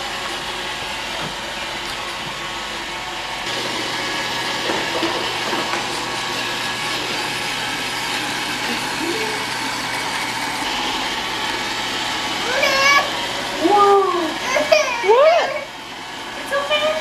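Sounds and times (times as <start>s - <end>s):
robot vacuum whirring: 3.4s - 17.0s.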